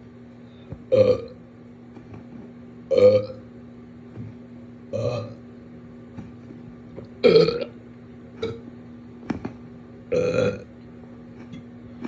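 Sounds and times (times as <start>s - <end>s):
person burping: 0.9s - 1.4s, 2.9s - 3.4s, 4.9s - 5.4s, 7.2s - 7.7s, 8.4s - 8.6s, 10.1s - 10.7s.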